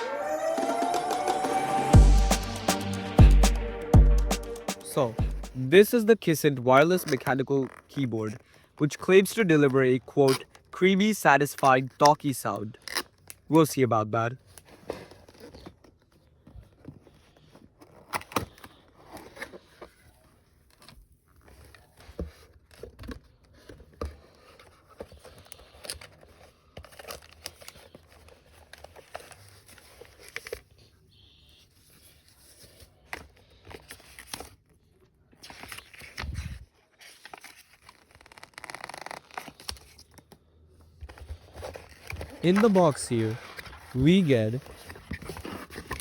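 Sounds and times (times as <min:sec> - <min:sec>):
cardboard and plastic packaging rustling: 0:14.4 - 0:31.1, 0:31.7 - 0:46.0.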